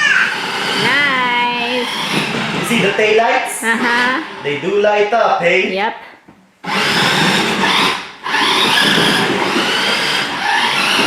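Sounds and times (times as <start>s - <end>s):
rc car motor whining: 0.1s - 4.5s, 6.6s - 11.0s.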